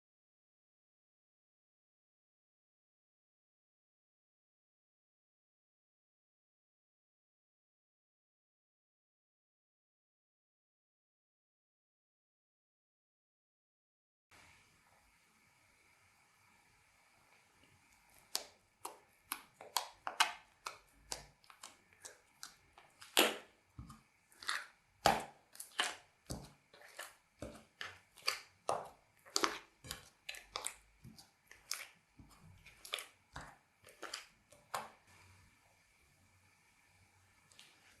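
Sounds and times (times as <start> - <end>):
slime clicking and popping: 18.3 - 34.9.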